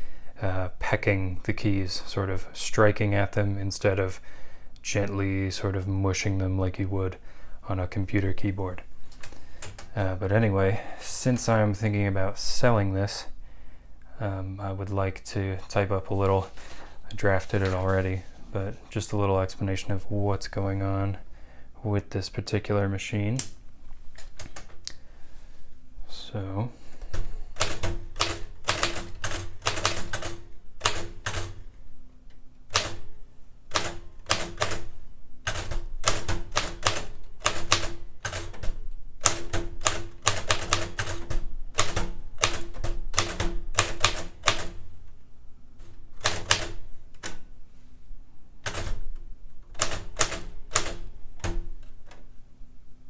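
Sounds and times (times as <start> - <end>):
manual typewriter typing: 9.1 - 10.1, 27.0 - 31.7, 32.7 - 44.9, 45.8 - 47.5, 48.6 - 52.2.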